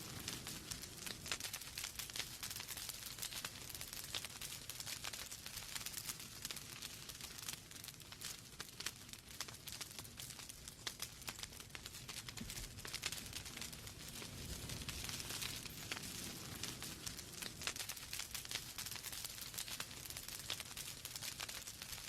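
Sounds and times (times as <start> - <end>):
fire crackling and popping: 0.0 - 22.0
low rush of flame: 0.0 - 22.0.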